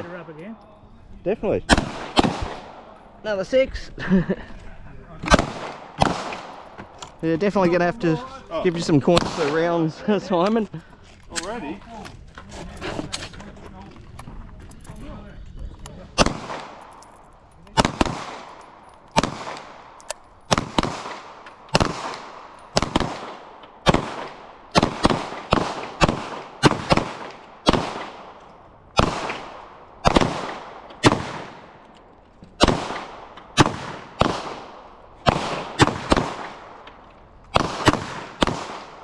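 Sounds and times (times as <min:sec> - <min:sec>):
handgun shots with ringing echo: 0:16.2 - 0:28.4, 0:32.6 - 0:39.0.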